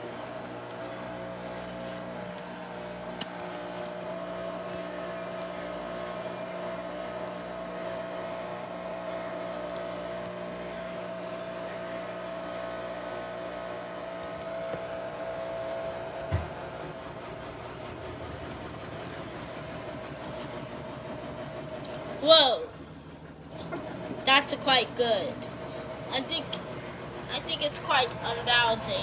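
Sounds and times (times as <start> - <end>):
washing machine running: 0.0 - 29.0.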